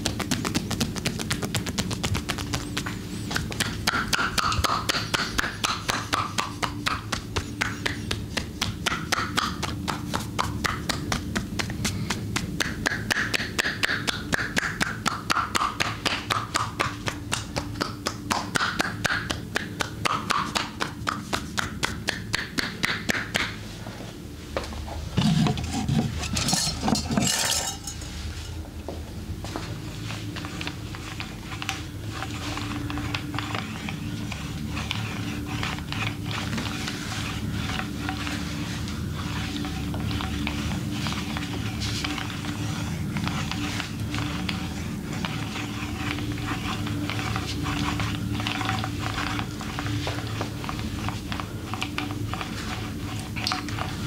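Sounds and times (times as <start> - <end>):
hands tapping and slapping skin: 0.0 - 23.6
hands rubbing skin: 0.0 - 24.2, 30.0 - 54.0.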